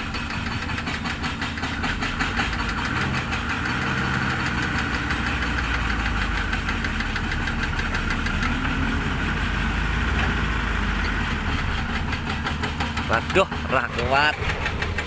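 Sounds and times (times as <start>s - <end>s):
diesel engine clattering: 0.0s - 15.0s.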